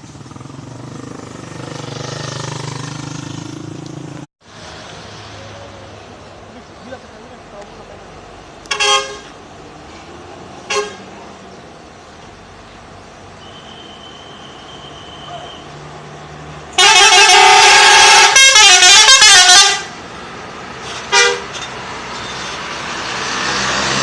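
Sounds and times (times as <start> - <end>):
musical air horn: 16.8 - 19.9, 21.1 - 21.6.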